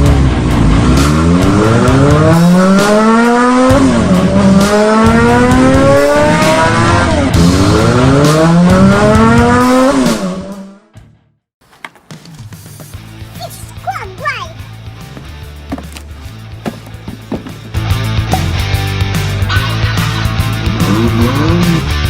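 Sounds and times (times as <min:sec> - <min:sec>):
car engine revving: 0:00.0 - 0:10.9, 0:18.4 - 0:22.0.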